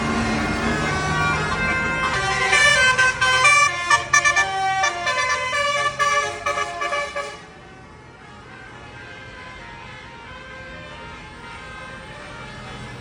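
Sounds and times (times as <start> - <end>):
bus musical horn tune: 0.6 - 7.5.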